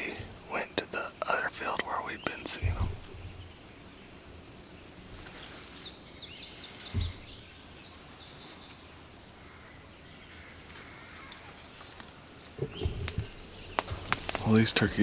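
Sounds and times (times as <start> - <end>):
songbird singing: 0.0 - 15.0
low bump: 2.5 - 5.4, 6.8 - 7.7.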